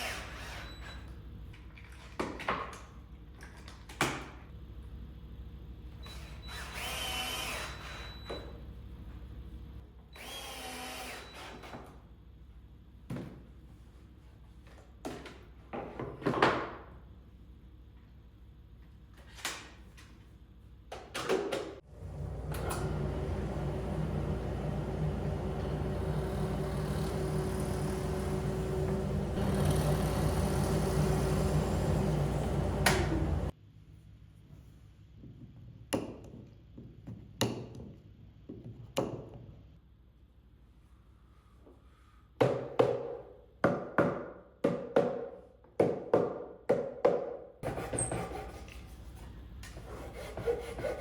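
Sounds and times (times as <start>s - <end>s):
power tool motor running: 21.9s - 33.5s.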